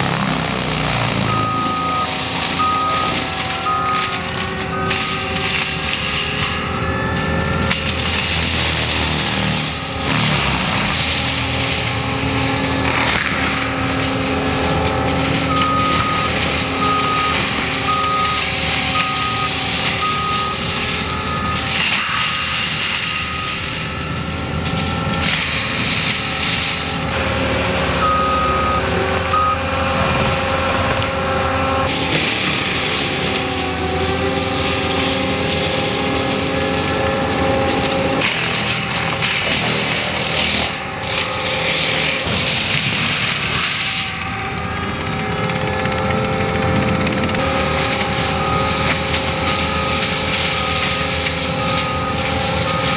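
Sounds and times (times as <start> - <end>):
track loader engine running: 0.0 - 52.9
backup alarm beeping: 1.2 - 7.7, 15.4 - 25.2, 27.4 - 29.8, 47.4 - 52.9.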